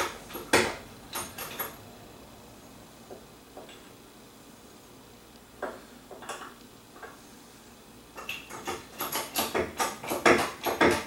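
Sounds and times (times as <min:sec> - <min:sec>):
mechanical clicks and knocks: 0:00.0 - 0:01.8, 0:08.2 - 0:11.0.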